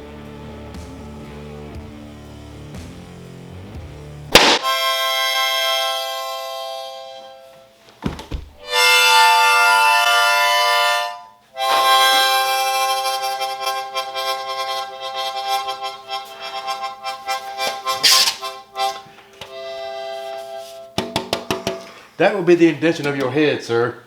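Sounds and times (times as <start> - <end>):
harmonica chords: 0.0 - 23.6
harsh breathy harmonica blast: 4.3 - 7.8, 8.6 - 22.2.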